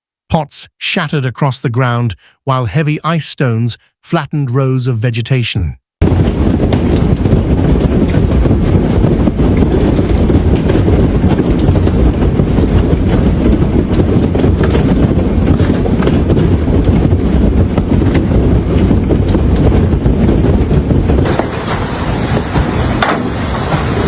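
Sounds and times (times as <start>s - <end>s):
wind buffeting microphone: 6.0s - 24.0s
hailstones pounding down: 21.2s - 24.0s.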